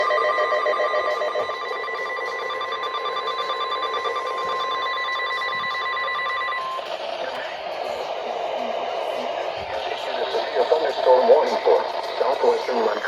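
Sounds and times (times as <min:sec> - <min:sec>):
steady warning beep: 0:00.0 - 0:07.7
radio hiss: 0:06.9 - 0:13.0.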